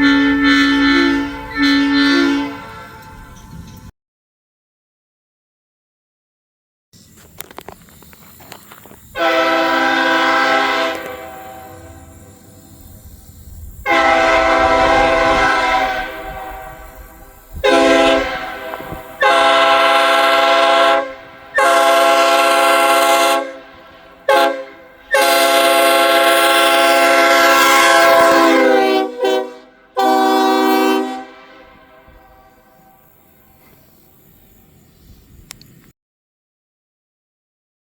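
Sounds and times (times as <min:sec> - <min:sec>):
locomotive air horn blasts: 0:00.0 - 0:03.8, 0:09.1 - 0:12.6, 0:13.8 - 0:33.8.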